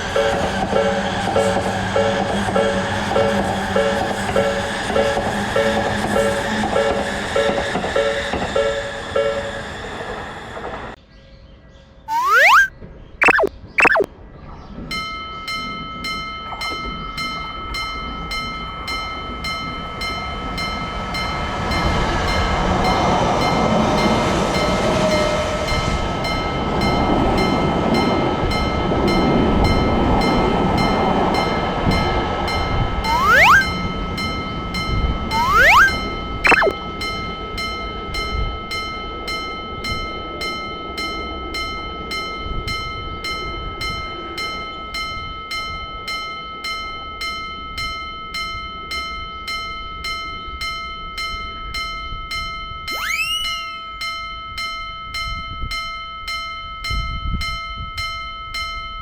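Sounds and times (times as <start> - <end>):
rising whistle-like sweeps: 12.1 - 14.1, 33.1 - 33.8, 35.3 - 36.7, 52.9 - 53.8.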